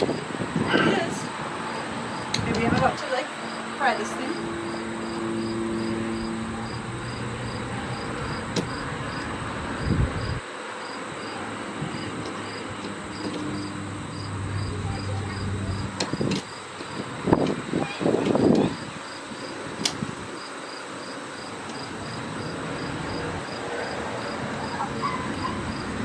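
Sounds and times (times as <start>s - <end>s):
cricket chirping: 1.3s - 19.7s, 20.3s - 26.0s
low hum: 3.6s - 10.4s, 12.6s - 16.6s.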